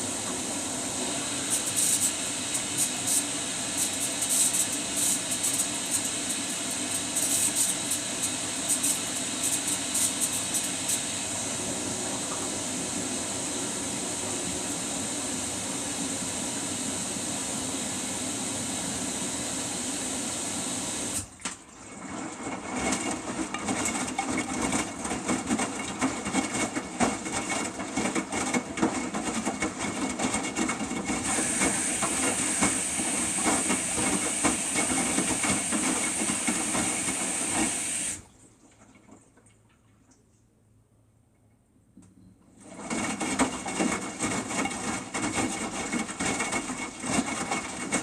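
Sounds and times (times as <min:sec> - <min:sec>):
washing machine hissing: 0:00.0 - 0:21.4, 0:29.4 - 0:38.3.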